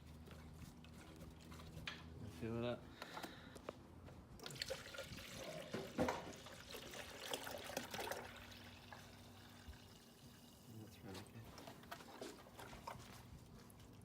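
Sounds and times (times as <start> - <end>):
water trickling pour: 4.4 - 10.9.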